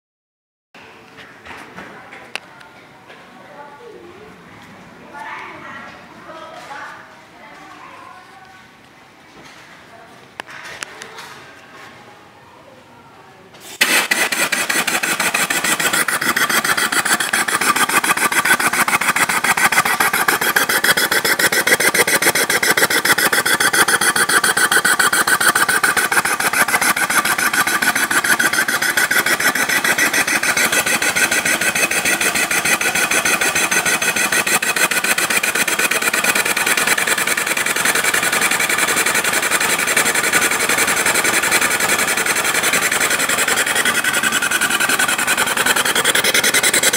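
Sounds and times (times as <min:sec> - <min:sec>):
diesel engine running: 0:13.8 - 0:46.9.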